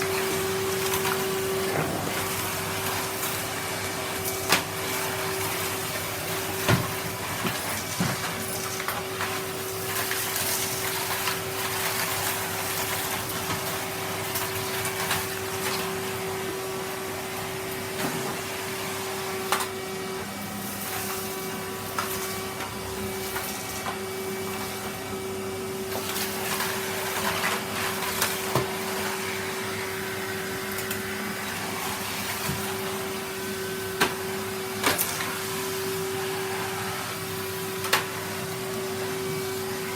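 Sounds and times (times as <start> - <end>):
vacuum cleaner motor humming: 0.0 - 39.9.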